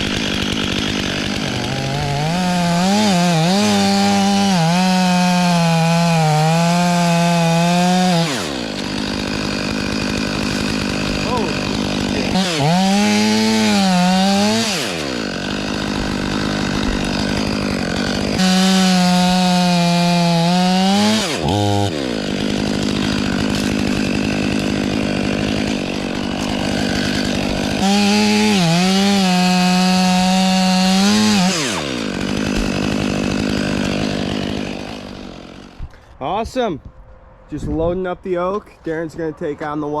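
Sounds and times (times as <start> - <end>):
chainsaw revving and cutting: 0.0 - 36.1.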